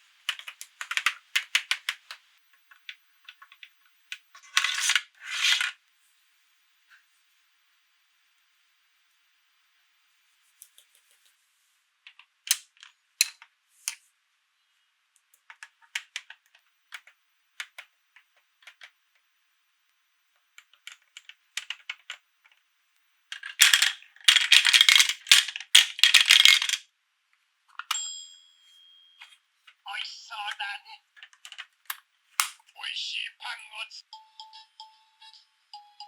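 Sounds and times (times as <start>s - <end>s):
plastic toy pieces clicking: 0.3s - 2.2s, 15.4s - 18.9s, 20.6s - 22.6s, 23.3s - 26.8s, 31.2s - 32.6s.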